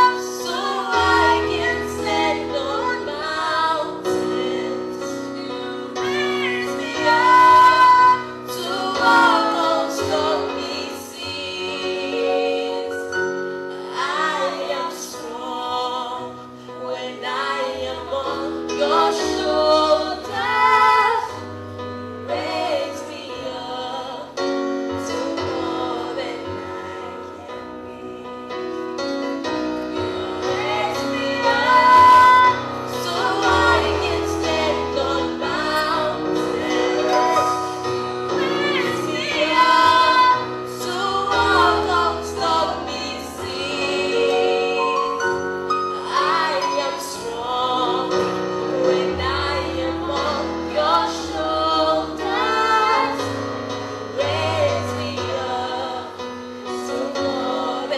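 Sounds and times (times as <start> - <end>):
woman singing a hymn: 0.0 - 13.1, 13.8 - 21.5, 22.2 - 28.7, 29.9 - 37.5, 38.2 - 45.4, 46.0 - 53.4, 54.1 - 57.9
keyboard chords and bass: 17.3 - 57.9
other voices singing: 30.0 - 45.3, 46.0 - 53.4, 54.1 - 57.9.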